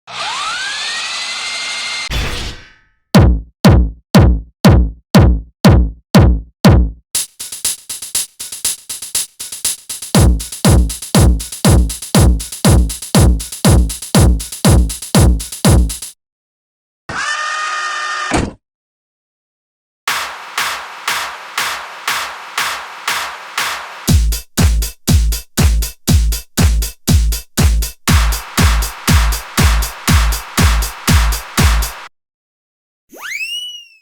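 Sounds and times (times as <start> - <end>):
drum-machine kick thump: 3.2 - 16.1, 20.1 - 32.1
steady high hiss: 28.2 - 32.1.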